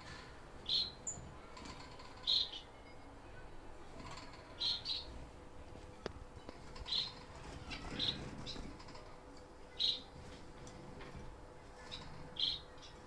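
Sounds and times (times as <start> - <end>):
finches chirping: 0.0 - 1.3, 2.1 - 2.8, 4.4 - 5.2, 6.6 - 8.7, 9.7 - 10.2, 11.8 - 13.0.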